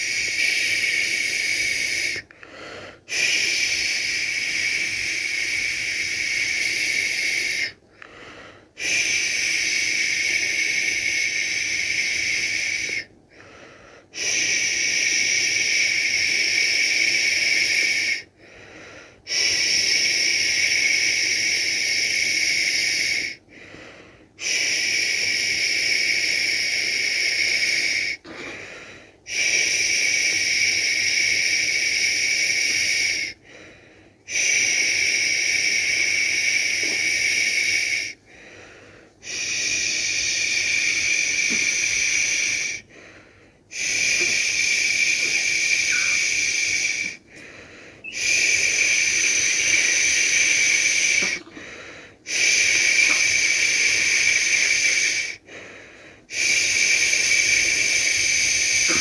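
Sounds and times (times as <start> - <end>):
person shushing: 43.8 - 47.2, 48.0 - 55.3, 57.0 - 59.0.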